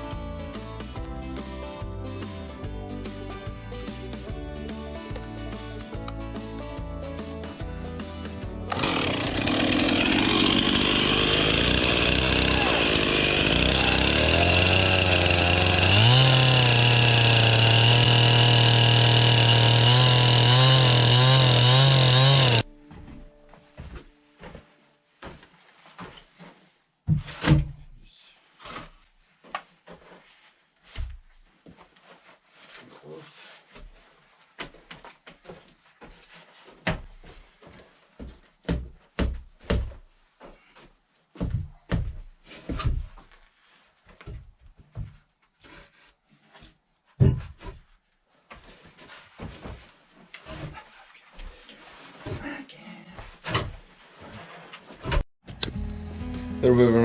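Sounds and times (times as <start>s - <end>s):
rasping rubbing on wood: 8.8s - 22.6s
wooden knocks and thumps: 27.0s - 27.8s, 38.6s - 40.0s, 41.4s - 43.3s, 44.2s - 45.3s, 47.2s - 47.9s.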